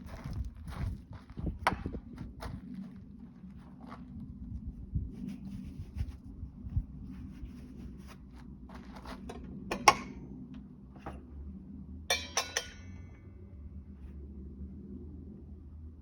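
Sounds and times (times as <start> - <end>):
ringing metal clinks: 12.1 - 13.0.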